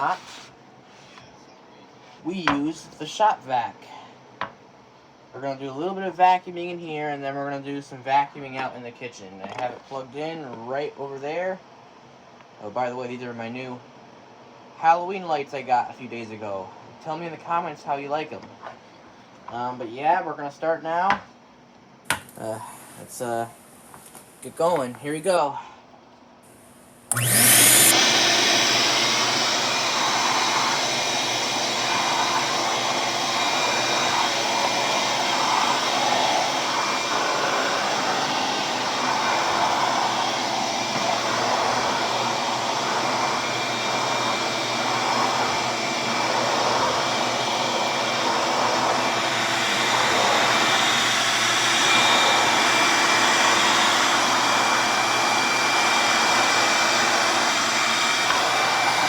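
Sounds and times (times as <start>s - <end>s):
shop vacuum running: 0.0s - 3.3s, 22.1s - 25.6s, 26.5s - 59.0s.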